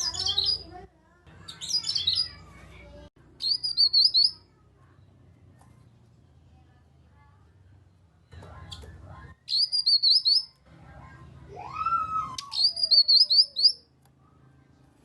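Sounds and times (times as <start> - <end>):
bird chirping: 0.0 - 0.8, 1.4 - 2.6, 3.3 - 5.2, 7.8 - 10.6, 12.4 - 13.9
rising and falling bird whistle: 9.5 - 10.5, 11.8 - 13.8.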